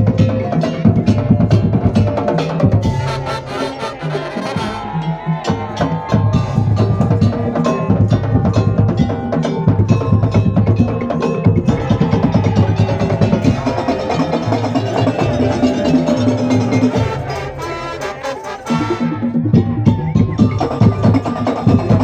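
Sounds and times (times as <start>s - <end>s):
drum beats: 0.0s - 22.0s
held pitched melodic notes: 0.0s - 22.0s.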